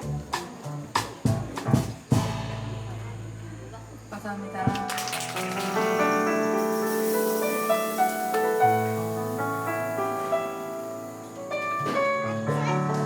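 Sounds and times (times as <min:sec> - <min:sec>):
slow jazz piano: 0:00.0 - 0:13.0.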